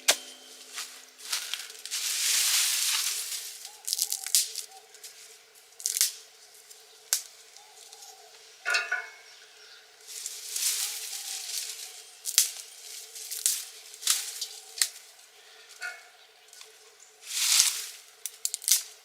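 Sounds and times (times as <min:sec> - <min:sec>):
wood fire crackling: 0:00.0 - 0:07.6, 0:10.0 - 0:15.8, 0:17.3 - 0:19.0.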